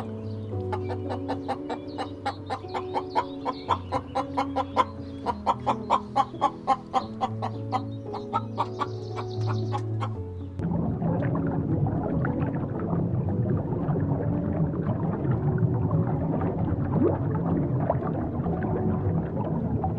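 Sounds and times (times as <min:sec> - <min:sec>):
chickens clucking: 0:00.0 - 0:10.3
background music with held notes: 0:00.0 - 0:19.9.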